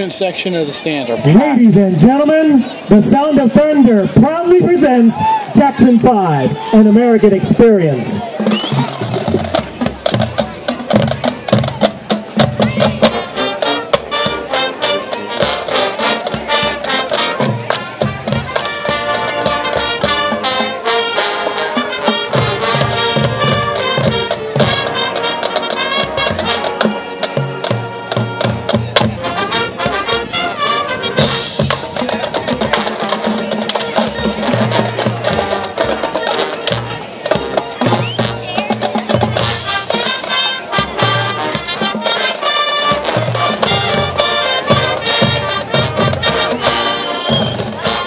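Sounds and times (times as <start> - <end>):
drumline percussion: 0.0 - 48.0
brass section playing: 12.6 - 48.0.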